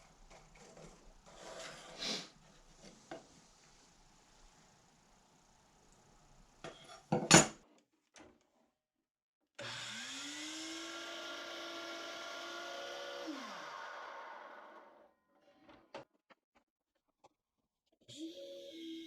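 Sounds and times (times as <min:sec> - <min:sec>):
power tool motor whining: 0:09.6 - 0:15.0.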